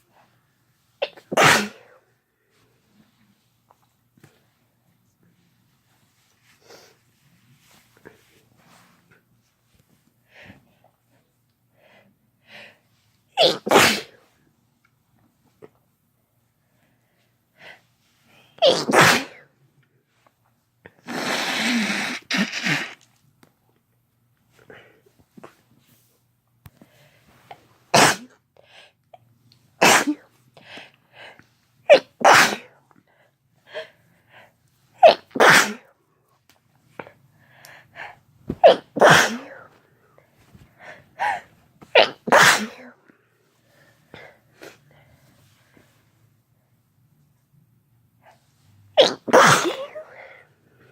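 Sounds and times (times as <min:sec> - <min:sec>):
person sneezing: 0:01.0 - 0:02.0, 0:13.4 - 0:14.3, 0:18.6 - 0:19.5, 0:21.0 - 0:23.1, 0:27.9 - 0:28.4, 0:29.8 - 0:30.3, 0:31.9 - 0:32.8, 0:35.0 - 0:35.9, 0:38.0 - 0:39.8, 0:40.8 - 0:43.1, 0:49.0 - 0:50.5.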